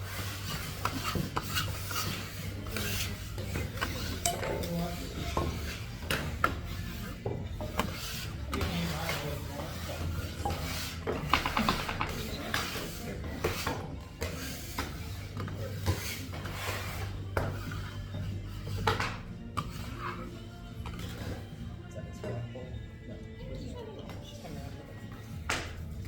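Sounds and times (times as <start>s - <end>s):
scraping on wooden boards: 0.0s - 20.3s.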